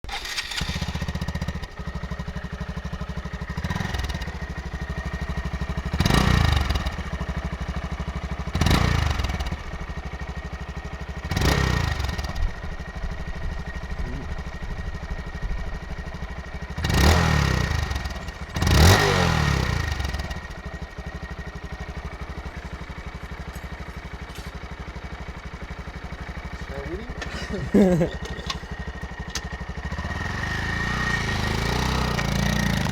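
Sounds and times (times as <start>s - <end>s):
motorcycle engine idling and revving: 0.0s - 32.9s.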